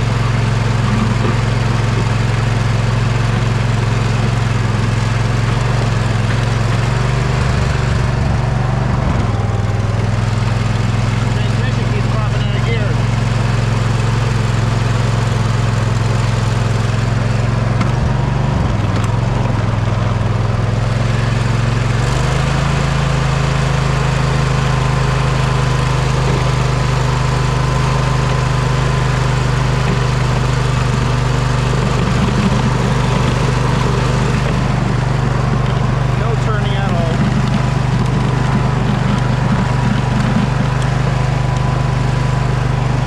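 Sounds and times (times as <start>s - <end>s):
lawn tractor engine running: 0.0s - 43.0s.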